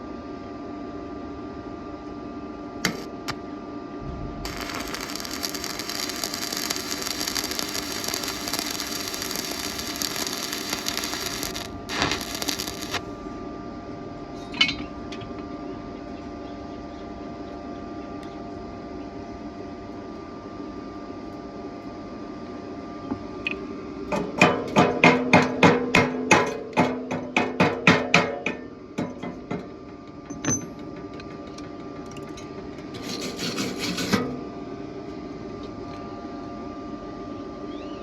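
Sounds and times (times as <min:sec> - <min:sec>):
machine hum: 0:01.3 - 0:24.4
welding arc crackling: 0:02.8 - 0:03.4, 0:04.4 - 0:13.1.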